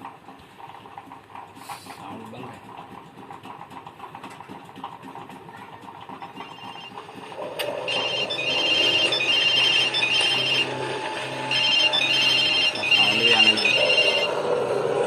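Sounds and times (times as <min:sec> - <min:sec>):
high electronic ringing tune: 0:06.4 - 0:15.0.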